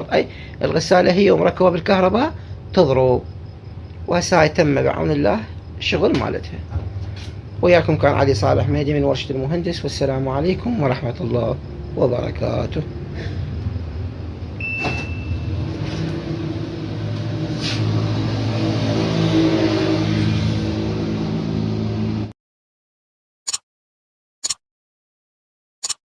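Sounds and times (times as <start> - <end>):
brief high tone: 14.6 - 15.7.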